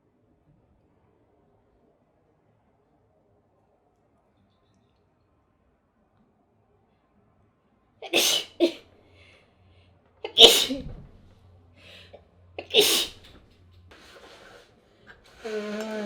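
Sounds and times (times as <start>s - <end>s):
woman sneezing: 8.0s - 8.8s, 10.3s - 11.0s, 12.6s - 13.3s
faint breaths: 8.0s - 16.0s.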